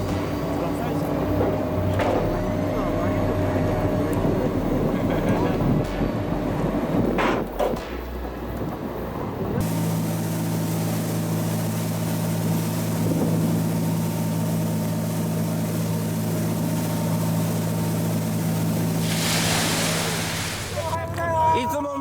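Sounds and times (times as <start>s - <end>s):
boat engine droning: 0.0s - 21.7s
rushing noise: 18.9s - 21.0s.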